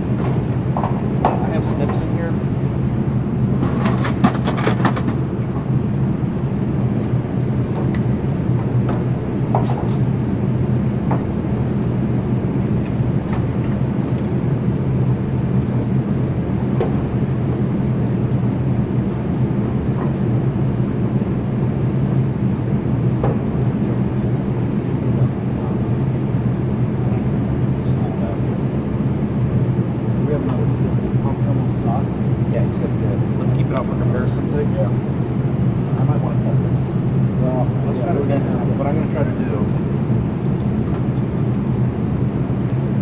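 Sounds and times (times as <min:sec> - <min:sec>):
engine droning: 0:00.0 - 0:43.0.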